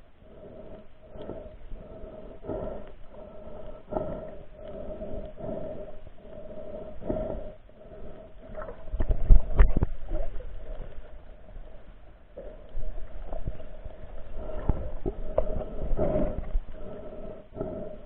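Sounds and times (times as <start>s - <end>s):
low underwater rumble: 0.0s - 18.0s
steady hum: 0.0s - 18.0s
muffled underwater knocks and bumps: 8.6s - 10.5s.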